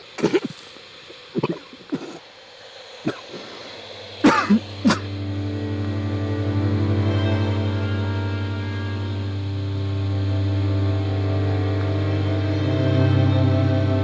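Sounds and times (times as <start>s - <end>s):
person coughing: 0.1s - 0.7s, 1.4s - 2.2s, 3.1s - 3.5s, 4.2s - 5.1s
low musical drone: 4.0s - 14.0s.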